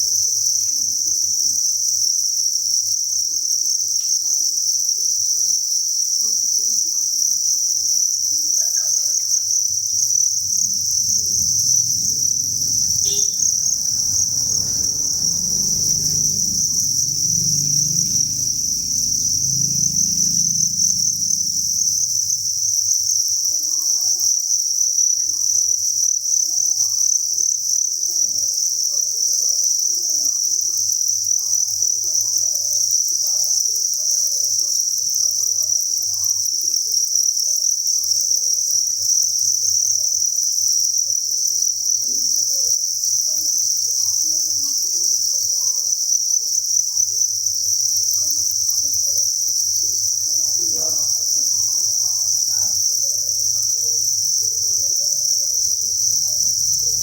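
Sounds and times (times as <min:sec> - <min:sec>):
crickets chirping in chorus: 0:00.0 - 0:57.0
low rumble: 0:10.2 - 0:22.8.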